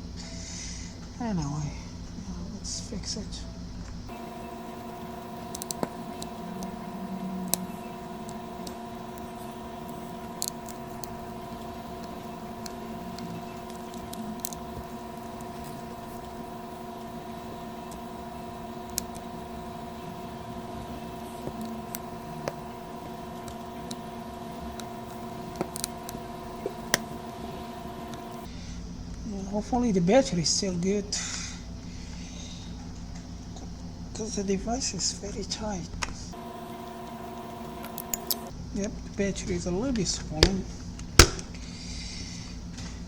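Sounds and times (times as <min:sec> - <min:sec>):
steady electrical hum: 0:04.1 - 0:28.5, 0:36.4 - 0:38.5.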